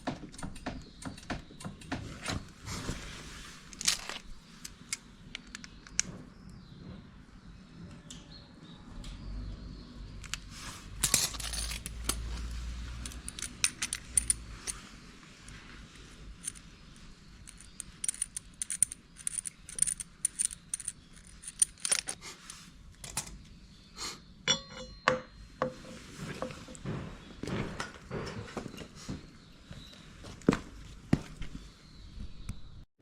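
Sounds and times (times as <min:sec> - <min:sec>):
metal parts clinking: 0:03.7 - 0:06.0, 0:11.0 - 0:14.9, 0:16.4 - 0:23.3, 0:24.5 - 0:25.4.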